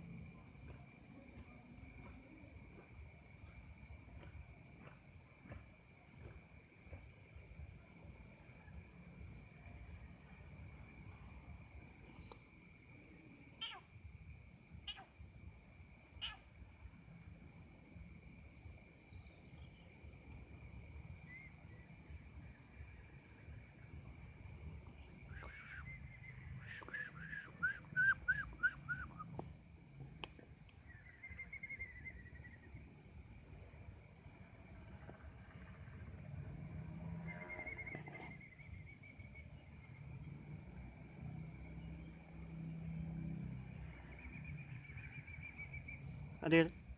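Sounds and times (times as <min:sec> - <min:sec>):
insect drone: 0:00.0 - 0:46.9
faint pulsing chirp: 0:14.8 - 0:46.9.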